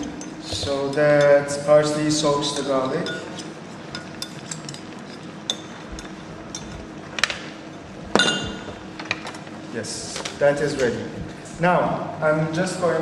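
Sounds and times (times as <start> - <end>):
utensil clinking against a dish: 0.0 - 9.4.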